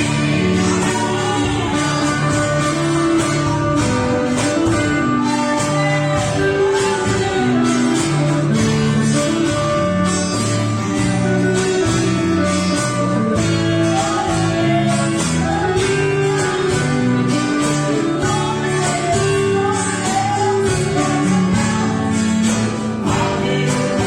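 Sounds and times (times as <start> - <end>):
gospel hymn singing: 0.0 - 24.0
strummed guitar: 0.0 - 24.0.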